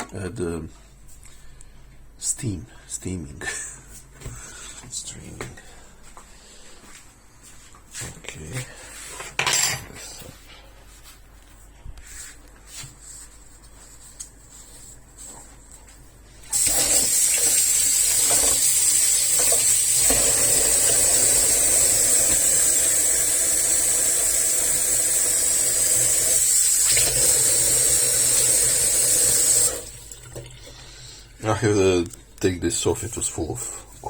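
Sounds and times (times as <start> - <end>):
espresso machine steam hiss: 16.5 - 29.9.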